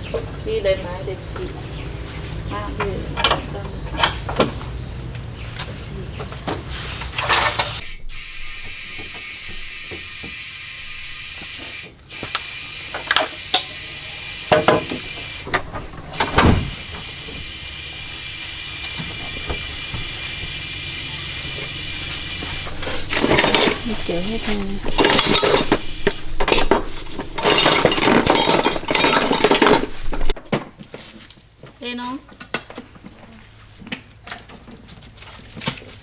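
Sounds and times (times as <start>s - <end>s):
machine hissing: 6.7s - 30.4s.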